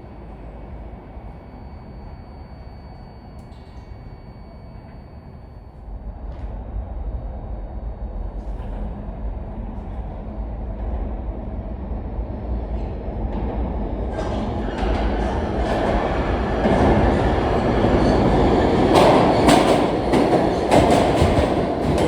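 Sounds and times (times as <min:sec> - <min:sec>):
subway train rumbling: 0:00.0 - 0:22.0.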